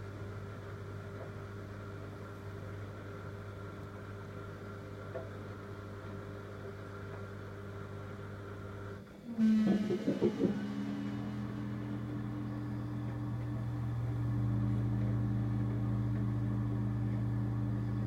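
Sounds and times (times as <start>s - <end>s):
washer dryer buzzing: 4.2s - 18.0s.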